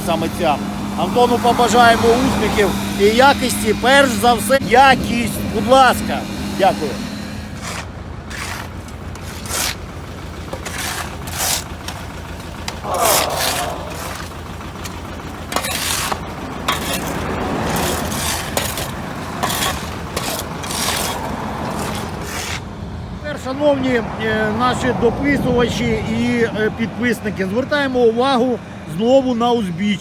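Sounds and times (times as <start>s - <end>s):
footsteps on gravel: 7.6s - 22.6s.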